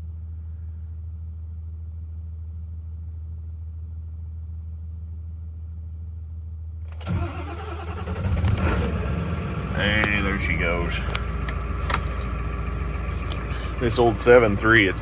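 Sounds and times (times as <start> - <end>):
steady low hum: 0.0 - 7.0, 8.0 - 15.0
diesel engine cranking: 6.9 - 15.0.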